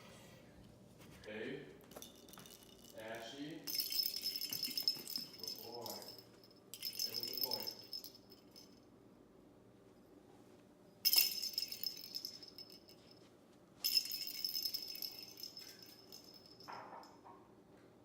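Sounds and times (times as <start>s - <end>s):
small jingle bell jingling: 1.8s - 8.8s, 11.0s - 17.2s.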